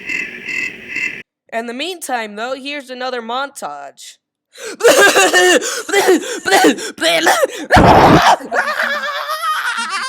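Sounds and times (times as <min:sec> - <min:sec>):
person fake coughing: 0:04.6 - 0:09.0.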